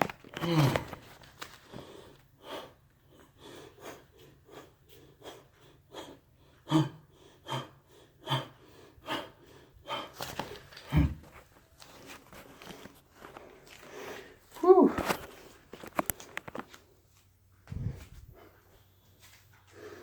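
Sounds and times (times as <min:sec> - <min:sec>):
person breathing hard: 0:00.4 - 0:11.3, 0:12.6 - 0:14.6, 0:19.6 - 0:20.0.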